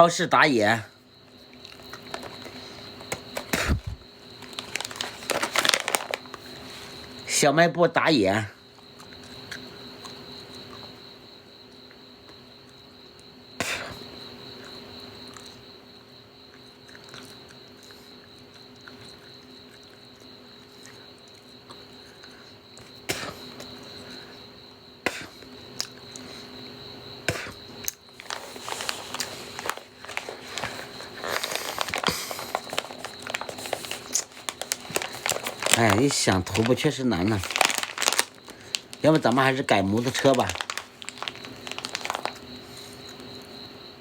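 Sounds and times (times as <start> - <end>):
crickets chirping: 0.0 - 44.0
crinkling and rustling handling: 1.6 - 7.1, 28.1 - 43.2.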